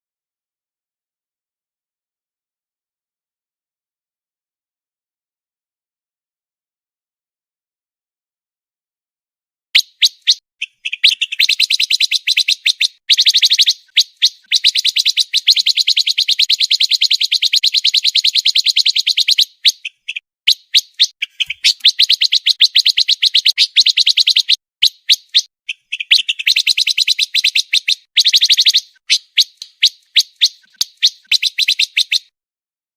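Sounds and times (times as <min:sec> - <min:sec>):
single bird chirps: 0:09.8 - 0:32.3
songbird trilling: 0:09.8 - 0:32.3.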